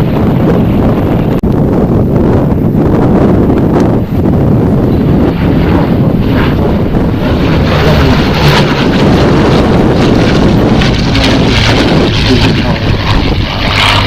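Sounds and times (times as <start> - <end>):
aircraft engine: 0.0 - 14.0
wind buffeting microphone: 0.0 - 14.0.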